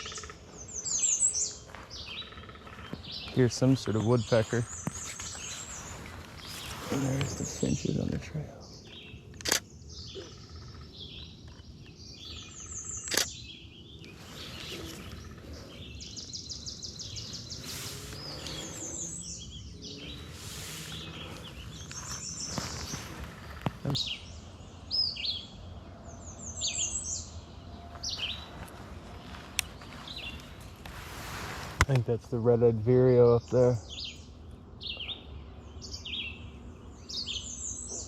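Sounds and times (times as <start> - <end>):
songbirds singing: 0.0 - 38.0
sharp clicks: 9.3 - 9.7, 13.0 - 13.4.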